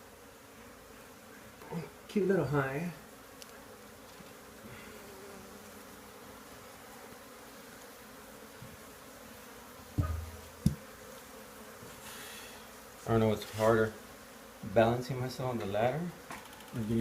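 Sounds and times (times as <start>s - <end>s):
bees buzzing: 0.0s - 17.0s
knocks: 10.0s - 10.8s.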